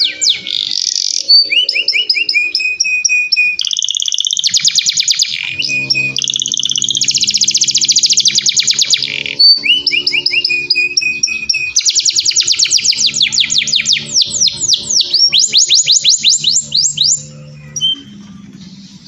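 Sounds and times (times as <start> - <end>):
canary singing: 0.0 - 19.0
low steady tone: 5.3 - 11.8.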